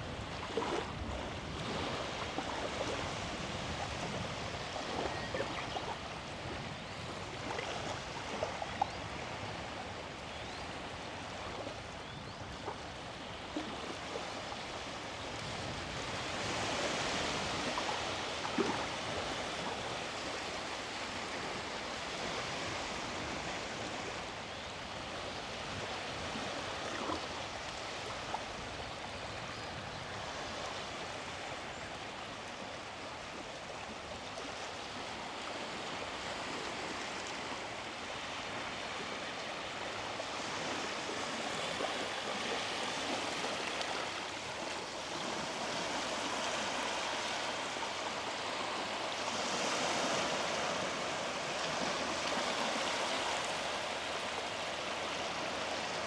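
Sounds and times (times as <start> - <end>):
sea waves washing onto beach: 32.5 - 56.0.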